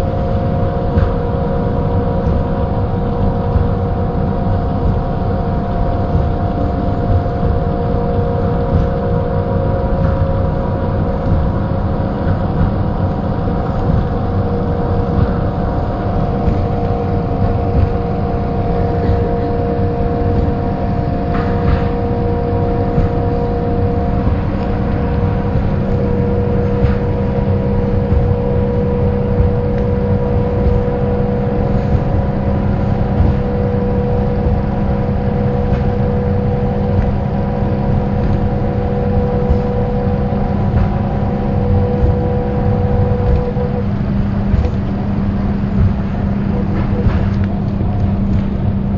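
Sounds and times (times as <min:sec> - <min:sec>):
axle gear whine: 0:00.0 - 0:48.9
bus diesel engine rumbling: 0:00.0 - 0:48.9.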